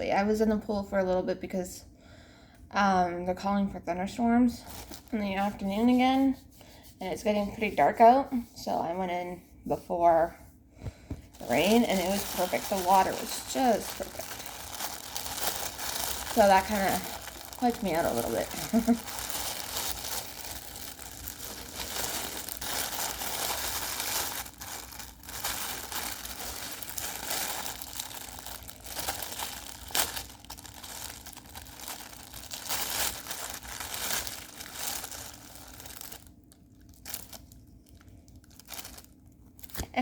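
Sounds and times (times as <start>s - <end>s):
plastic packaging crinkling and tearing: 4.5s - 6.0s, 11.2s - 40.0s.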